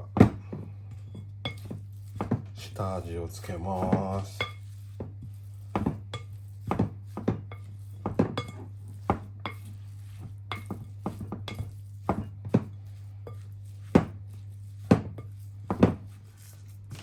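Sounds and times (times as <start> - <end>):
utensils clinking against dish: 1.1 - 2.8.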